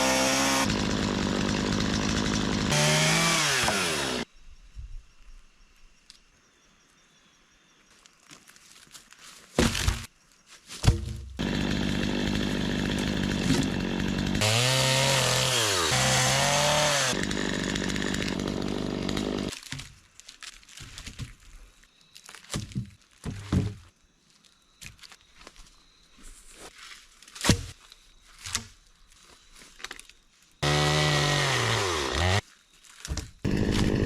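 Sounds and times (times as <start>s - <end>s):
chainsaw cutting wood: 0.0s - 4.3s, 11.4s - 19.6s, 30.6s - 32.4s, 33.4s - 34.0s.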